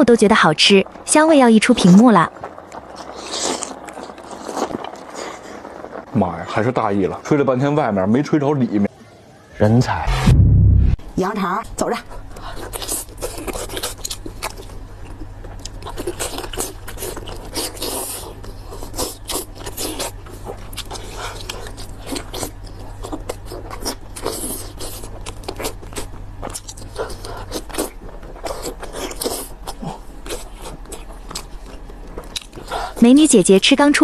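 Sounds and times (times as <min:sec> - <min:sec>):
person chewing wetly: 0:02.4 - 0:06.0, 0:12.3 - 0:33.0.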